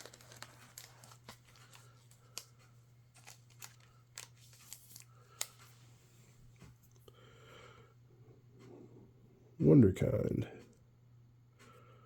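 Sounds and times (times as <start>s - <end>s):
trading cards clicking and rustling: 0.0s - 5.8s.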